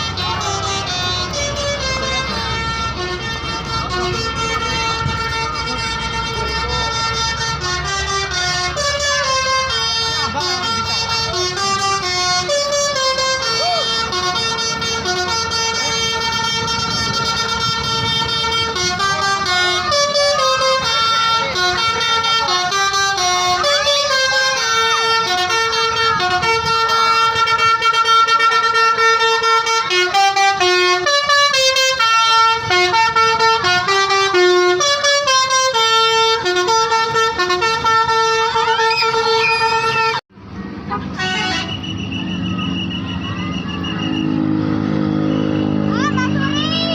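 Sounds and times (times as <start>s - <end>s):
tuned air horns playing melody: 0.0s - 40.2s, 40.8s - 46.9s.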